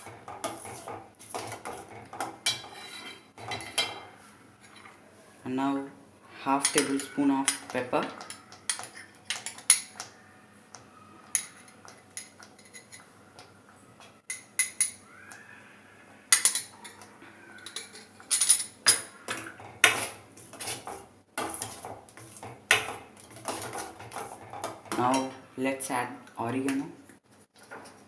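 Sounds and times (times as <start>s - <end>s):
spoon scraping a pan: 0.0s - 5.0s, 16.3s - 25.5s.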